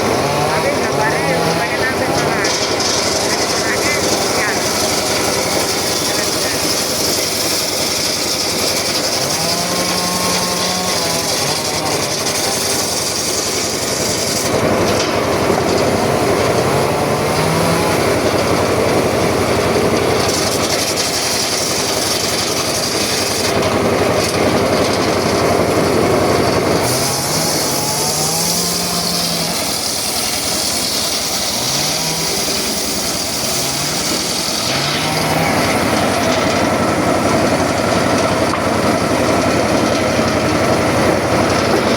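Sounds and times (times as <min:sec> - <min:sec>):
circular saw cutting wood: 0:00.0 - 0:41.9
short rising pitched sounds: 0:09.1 - 0:12.8.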